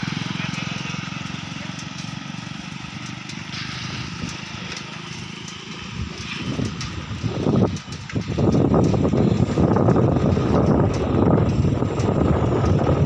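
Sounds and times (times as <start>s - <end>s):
engine running: 0.0s - 13.0s
gusty noise: 5.8s - 13.0s.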